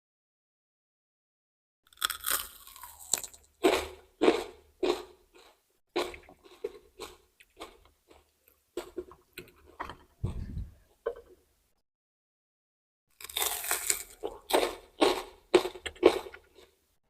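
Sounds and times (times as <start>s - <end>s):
crunching raw vegetables: 1.9s - 10.5s, 13.1s - 16.8s
dull low thump: 10.2s - 10.8s.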